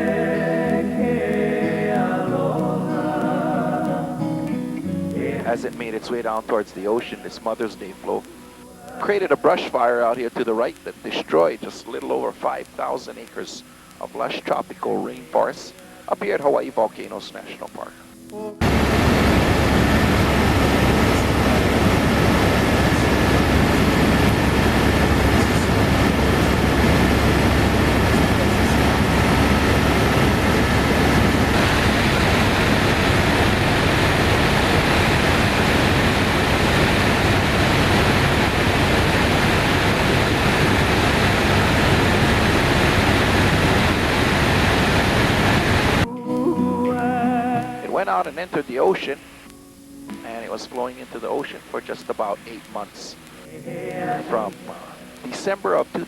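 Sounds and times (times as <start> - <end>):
faint high whine: 0.0 - 56.0
helicopter rotor and turbine noise: 18.6 - 46.0.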